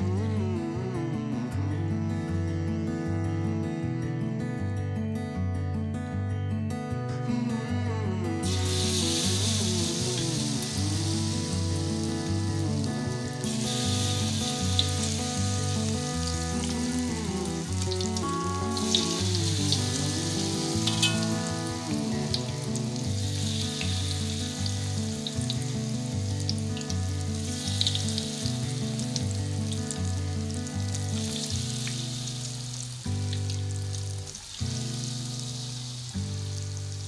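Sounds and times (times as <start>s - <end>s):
background music: 0.0s - 37.0s
food deep-frying in hot oil: 8.4s - 37.0s.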